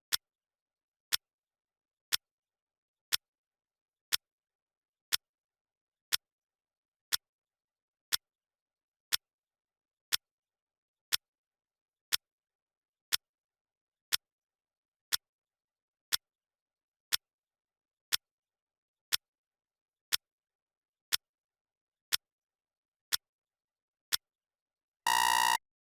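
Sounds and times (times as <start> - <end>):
clock ticking: 25.1 - 25.6
rapid electronic alarm beeping: 25.1 - 25.6.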